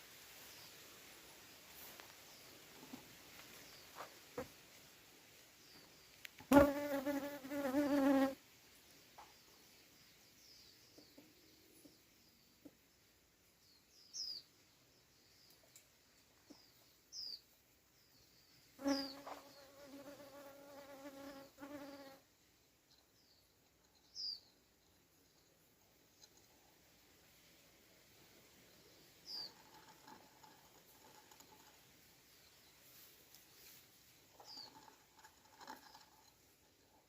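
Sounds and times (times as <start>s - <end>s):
flying insect buzzing: 6.5s - 8.4s, 18.8s - 22.2s.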